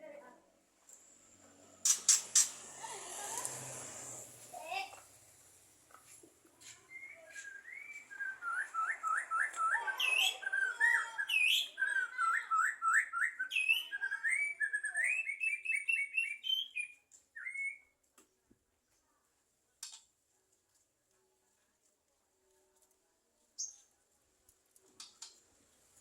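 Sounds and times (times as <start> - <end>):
bird whistling rapid notes: 7.0 - 13.8.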